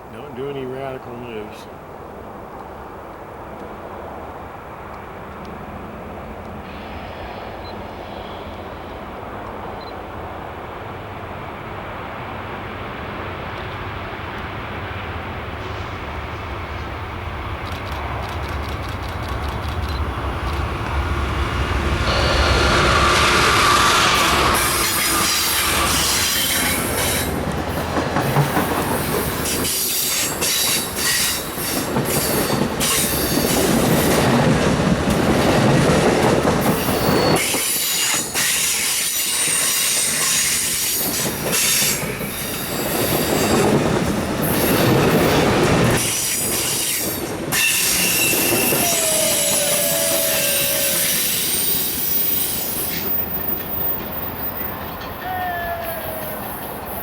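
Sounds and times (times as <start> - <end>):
heavy low train rumble: 0.0 - 57.0
clickety-clack of rail joints: 16.8 - 21.1, 25.3 - 50.4, 51.6 - 57.0
wheels squealing on rails: 17.8 - 57.0.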